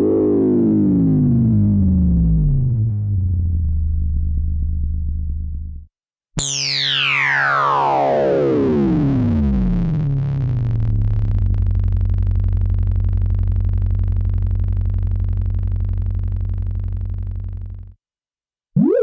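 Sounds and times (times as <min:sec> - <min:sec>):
low buzzing synth drone: 0:07.7 - 0:17.9
synthesizer tones gliding down: 0:18.8 - 0:19.0.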